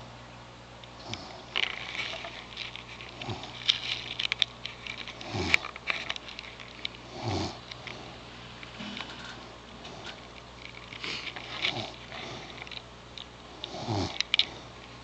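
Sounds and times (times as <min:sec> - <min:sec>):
person snoring: 0:07.1 - 0:07.6, 0:13.7 - 0:14.7.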